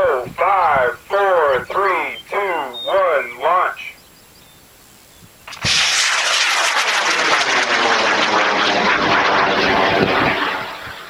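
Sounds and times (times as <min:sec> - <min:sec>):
rocket motor crackling roar: 0:05.5 - 0:11.0.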